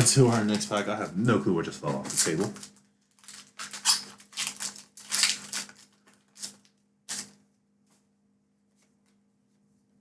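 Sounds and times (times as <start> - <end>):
foil wrapper crinkling and tearing: 1.9 - 7.4.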